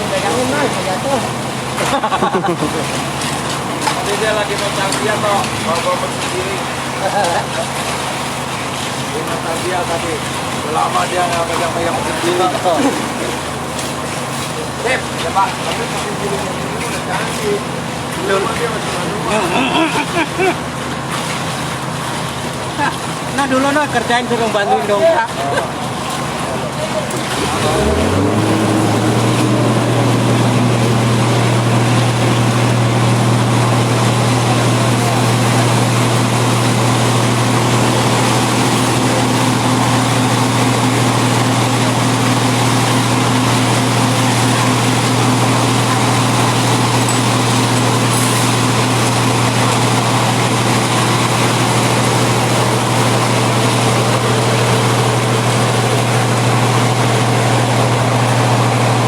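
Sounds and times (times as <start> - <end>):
diesel engine droning: 21.7 - 59.0.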